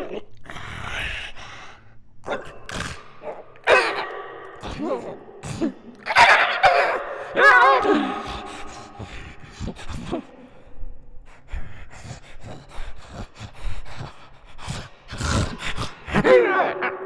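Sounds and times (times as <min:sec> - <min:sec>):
raspy breathy gasps: 0:07.0 - 0:16.3.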